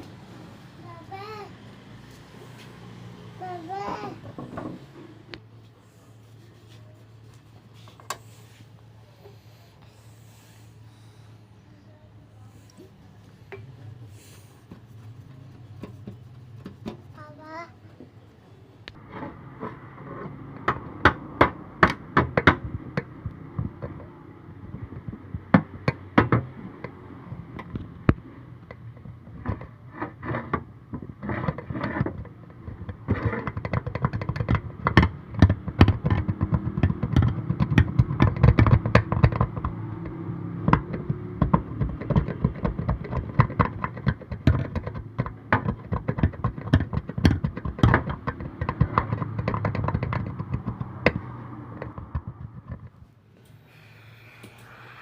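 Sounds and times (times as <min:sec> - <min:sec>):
sharp irregular clicks and taps: 0:32.9 - 0:53.0.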